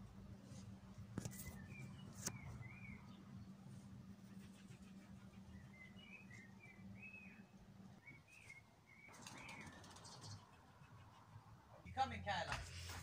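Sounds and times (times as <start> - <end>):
faint bird chirps: 1.3 - 3.5, 5.3 - 11.1.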